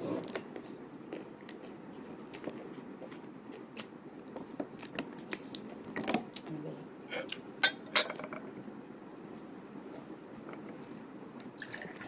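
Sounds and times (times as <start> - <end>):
person chewing: 1.1 - 6.4.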